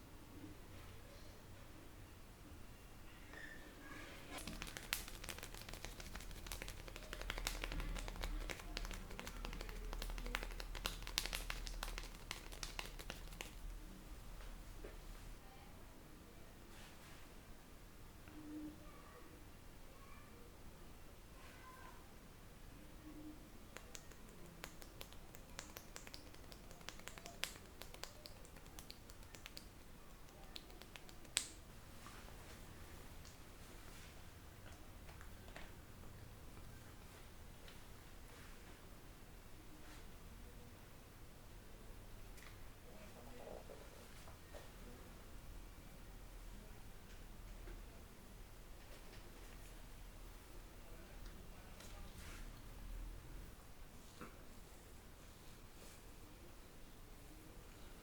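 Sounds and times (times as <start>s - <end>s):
fingers clicking and snapping: 4.4s - 13.6s, 23.7s - 31.6s
hands tapping on a head: 4.4s - 13.7s, 23.8s - 31.6s.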